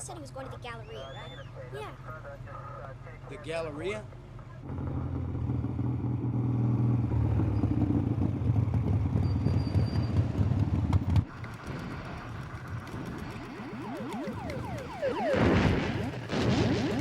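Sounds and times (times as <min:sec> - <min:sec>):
small motorcycle engine pulling away: 0:04.7 - 0:15.7.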